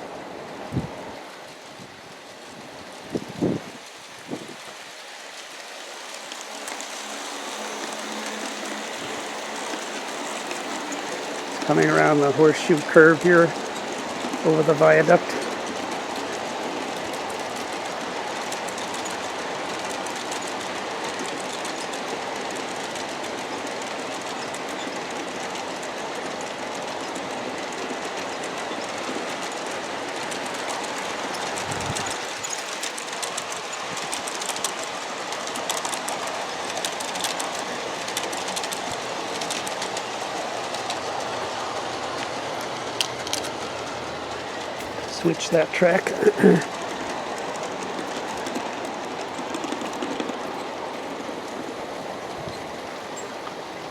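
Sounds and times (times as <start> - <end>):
model train wheels rolling: 0.0 - 53.9
clicks over rail joints: 26.4 - 53.8.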